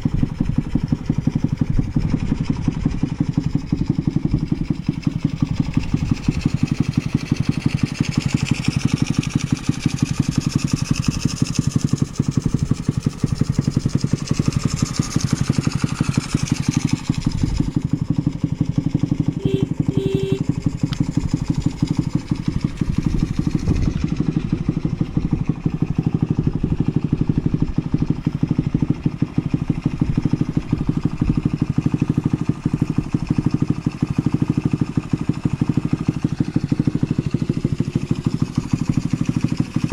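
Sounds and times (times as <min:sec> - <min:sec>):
small engine idling: 0:00.0 - 0:39.9
short beeps: 0:19.4 - 0:20.5.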